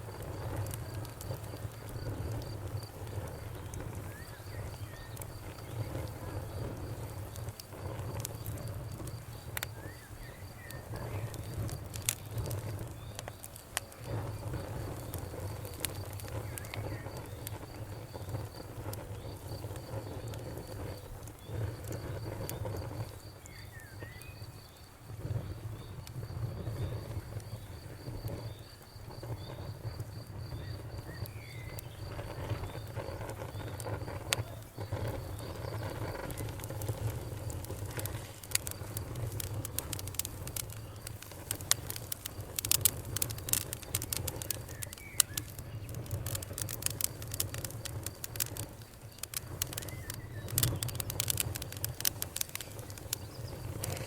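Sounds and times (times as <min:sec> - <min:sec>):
campfire crackling and popping: 0:00.0 - 0:54.0
low rumble of flames: 0:00.0 - 0:54.0
birds chirping: 0:30.6 - 0:47.0, 0:48.4 - 0:54.0
fast regular high chirping: 0:32.4 - 0:54.0.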